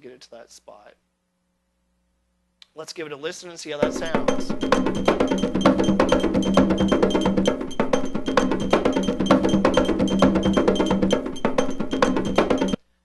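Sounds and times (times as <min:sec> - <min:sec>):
looped percussive sample: 0:03.8 - 0:12.8.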